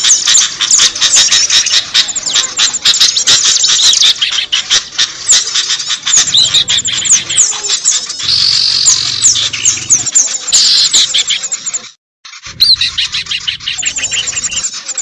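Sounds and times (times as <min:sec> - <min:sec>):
songbirds chirping and whistling: 0:00.0 - 0:15.0.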